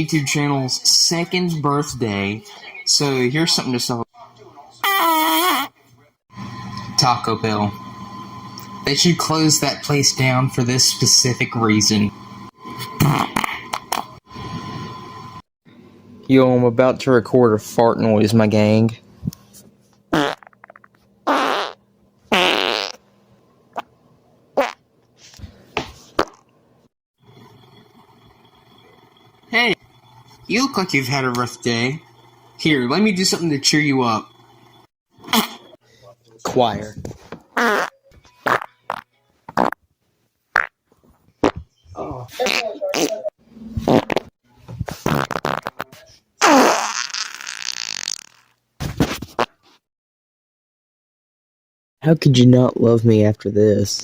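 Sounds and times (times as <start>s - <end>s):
fart sounds: 12.9s - 14.1s, 20.1s - 23.1s, 24.6s - 24.8s, 26.1s - 26.5s, 35.2s - 35.7s, 37.5s - 39.8s, 40.5s - 40.8s, 41.4s - 41.7s, 42.4s - 49.6s.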